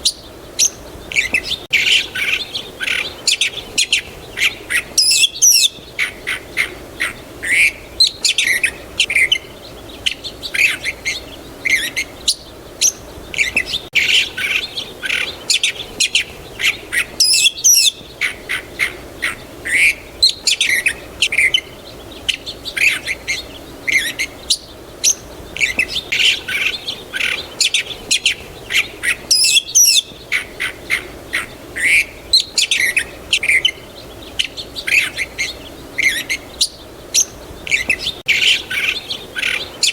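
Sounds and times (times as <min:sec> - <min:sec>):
small songbirds chirping: 0:00.0 - 0:39.9.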